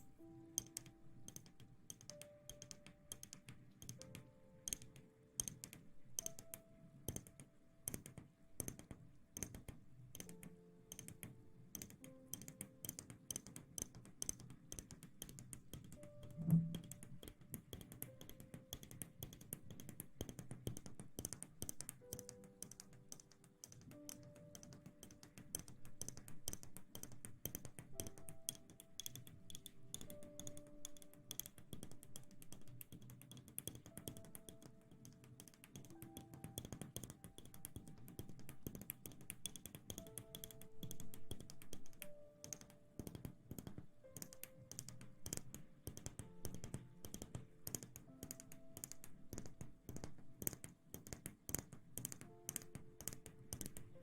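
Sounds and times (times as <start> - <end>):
rapid crisp ticks and taps: 0.0 - 54.0
soft background music: 0.0 - 54.0.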